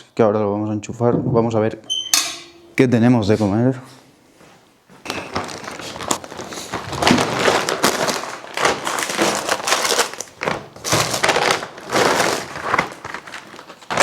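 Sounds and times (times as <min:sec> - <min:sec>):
bags rustling and crinkling: 0:05.0 - 0:14.0.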